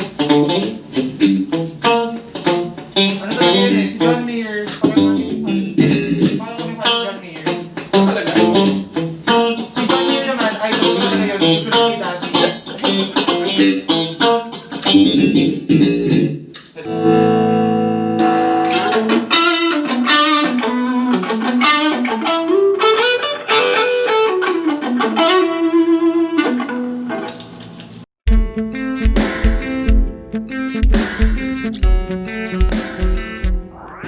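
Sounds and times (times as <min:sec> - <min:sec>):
electric guitar through an amp: 0:00.0 - 0:34.0.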